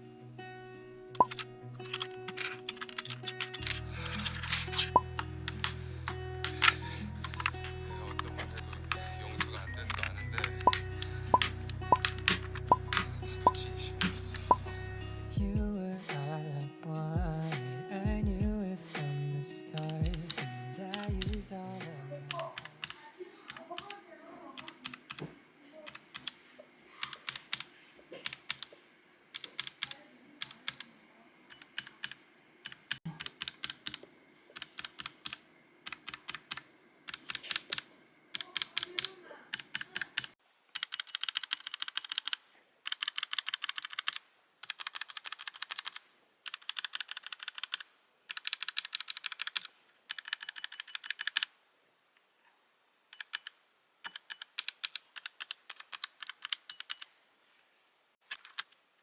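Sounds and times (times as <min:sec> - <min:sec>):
mechanical keyboard keystroke clacks: 0:01.2 - 0:03.8, 0:25.9 - 0:26.4, 0:29.4 - 0:30.9, 0:31.5 - 0:34.0, 0:34.6 - 0:51.5, 0:54.1 - 0:57.1.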